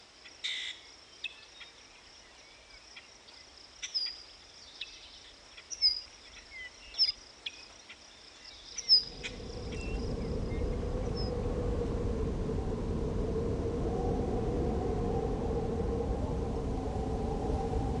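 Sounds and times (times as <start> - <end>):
faint insects: 0.0 - 18.0
birds chirping: 1.2 - 11.4
low rushing rumble: 8.9 - 18.0.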